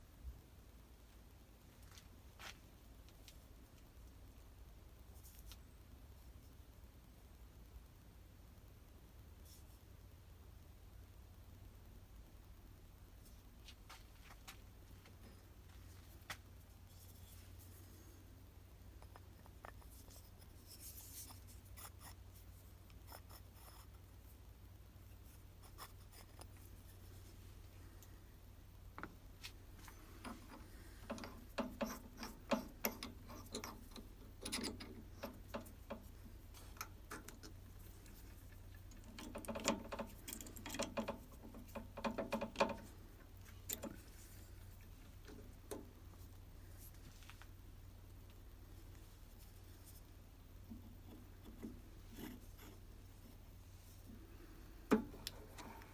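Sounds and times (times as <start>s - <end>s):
steady low hum: 0.0s - 55.9s
hand tools clicking and scraping: 29.8s - 45.9s.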